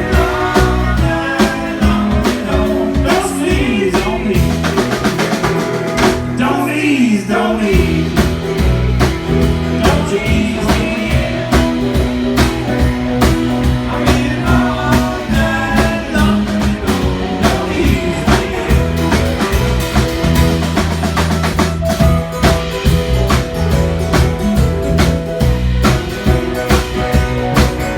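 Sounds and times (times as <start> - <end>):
person singing: 0.0 - 4.8, 6.3 - 8.6, 9.6 - 19.7
rock band music: 0.0 - 27.9.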